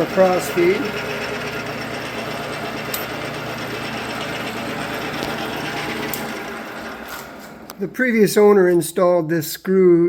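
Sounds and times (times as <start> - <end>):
metal lathe whirring: 0.0 - 7.8.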